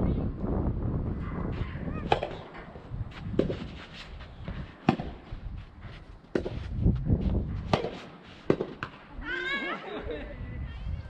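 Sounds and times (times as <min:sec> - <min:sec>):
wind buffeting microphone: 0:00.0 - 0:11.0
tennis racket hitting ball: 0:02.0 - 0:02.6, 0:04.8 - 0:05.3, 0:06.3 - 0:06.7, 0:07.6 - 0:09.0.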